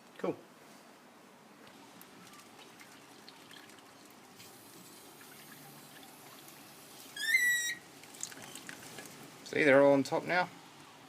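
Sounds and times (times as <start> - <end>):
water trickling onto soil: 1.6 - 7.2, 7.8 - 9.5.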